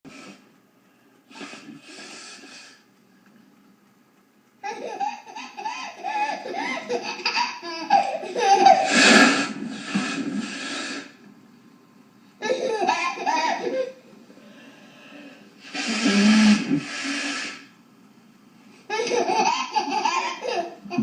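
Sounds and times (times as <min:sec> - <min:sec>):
woman blowing her nose: 0:01.3 - 0:02.8, 0:08.8 - 0:11.2, 0:15.6 - 0:17.7.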